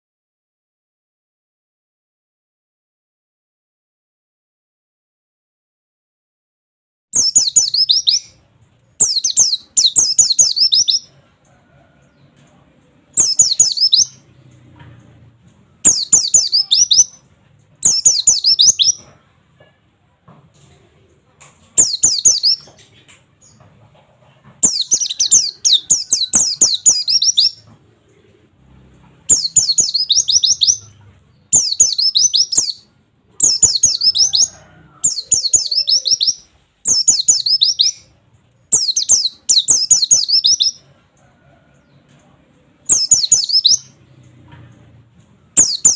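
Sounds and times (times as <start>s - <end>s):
bird singing rapid high notes: 7.2s - 8.4s, 9.0s - 11.1s, 13.2s - 14.3s, 15.8s - 17.2s, 17.8s - 19.0s, 21.8s - 22.7s, 24.6s - 27.6s, 29.3s - 34.5s, 35.1s - 38.1s, 38.7s - 40.8s, 42.9s - 44.0s, 45.5s - 45.9s.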